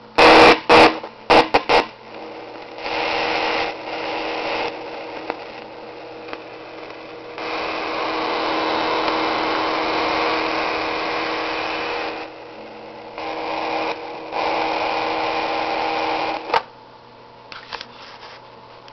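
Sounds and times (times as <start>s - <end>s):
static-like noise over a drone: 0.0s - 16.7s
circuit click: 3.6s - 7.9s, 8.6s - 12.1s.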